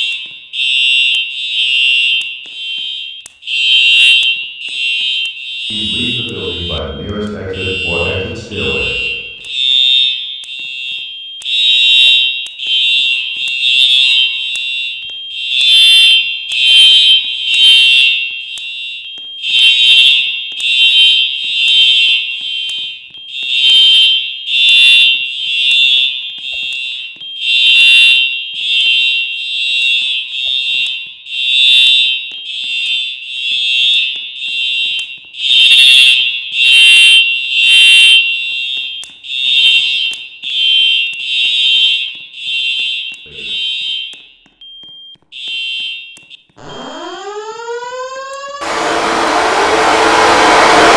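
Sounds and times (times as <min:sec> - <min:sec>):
fire alarm horn pulsing: 0:00.0 - 0:50.9.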